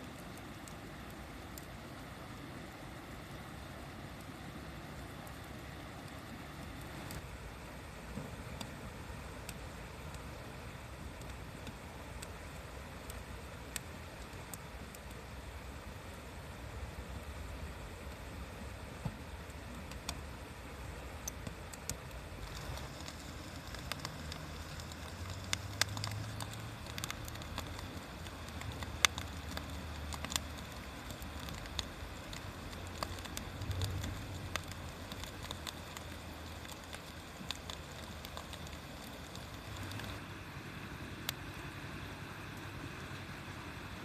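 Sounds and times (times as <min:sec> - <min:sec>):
low steady rumble: 0:00.0 - 0:44.0
wood fire crackling: 0:00.0 - 0:44.0
sharp pops of fire: 0:21.2 - 0:40.2.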